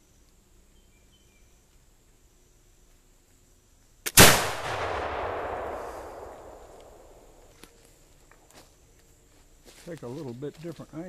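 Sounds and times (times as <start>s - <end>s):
loud rifle report: 4.1s - 7.5s.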